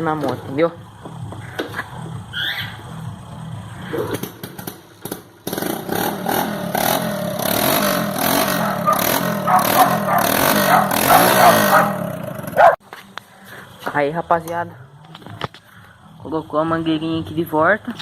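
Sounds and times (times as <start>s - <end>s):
motorcycle engine revving: 0.0s - 12.8s.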